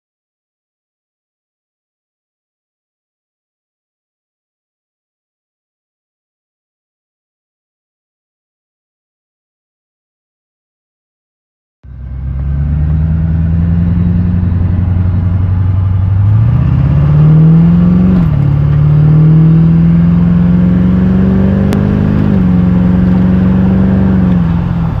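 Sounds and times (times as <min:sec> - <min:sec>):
diesel engine revving: 0:11.9 - 0:25.0.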